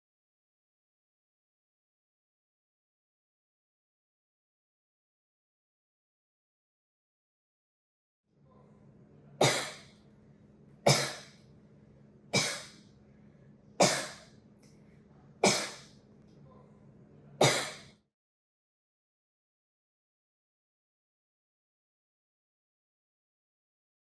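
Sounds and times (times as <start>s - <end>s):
faint steady hum: 8.4s - 18.0s
person coughing: 9.4s - 9.8s, 10.9s - 11.3s, 12.4s - 12.8s, 13.8s - 14.2s, 15.4s - 15.8s, 17.4s - 17.9s.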